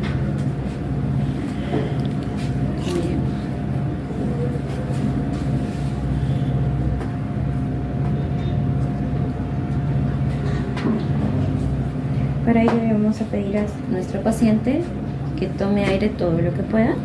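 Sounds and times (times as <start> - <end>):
constant hum tone: 0.0 - 17.0.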